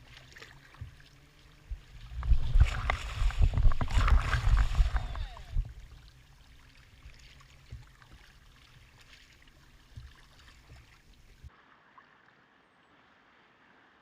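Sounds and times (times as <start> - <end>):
light water splashes and drips: 0.0 - 13.9
kayak paddling in water: 0.0 - 14.0
wind rumble on microphone: 0.7 - 6.2.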